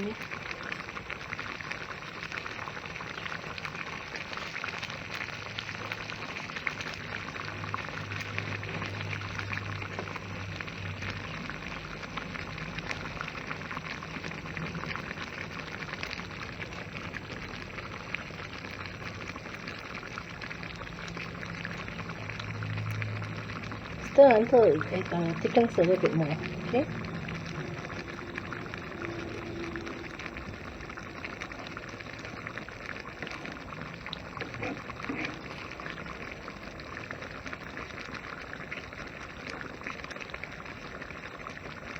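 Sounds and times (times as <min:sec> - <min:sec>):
sauce bubbling in a pan: 0:00.0 - 0:41.9
faint low hum: 0:20.7 - 0:36.9.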